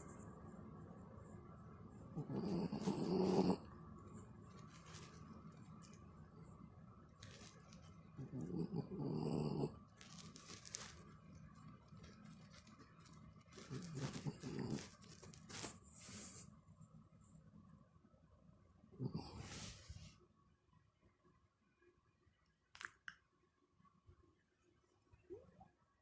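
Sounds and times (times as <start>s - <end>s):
dog grumbling snore-like: 2.1s - 3.6s, 8.2s - 9.8s, 13.7s - 14.9s, 19.0s - 19.8s.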